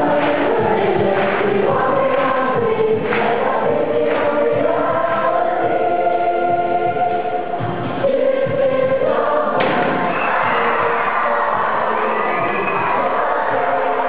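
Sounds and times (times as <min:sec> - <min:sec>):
choir singing held notes: 0:00.0 - 0:14.0.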